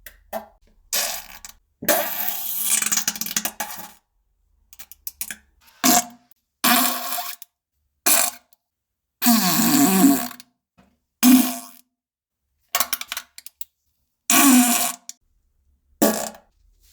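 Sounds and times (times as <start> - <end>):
farts: 16.0 - 16.4.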